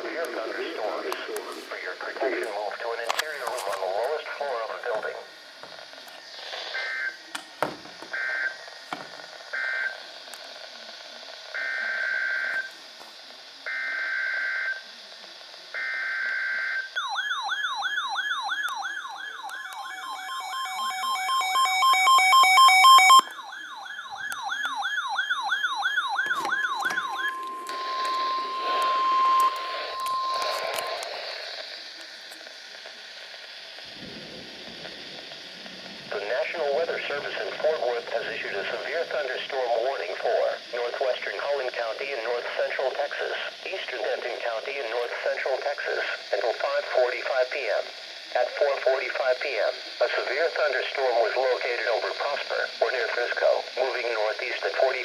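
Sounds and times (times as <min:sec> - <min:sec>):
radio static hiss: 0:00.0 - 0:17.0, 0:18.0 - 0:55.0
fast-warbling alarm: 0:15.8 - 0:31.6
digital data bursts: 0:16.9 - 0:32.0
steady alert tones: 0:18.9 - 0:23.2, 0:26.5 - 0:31.4.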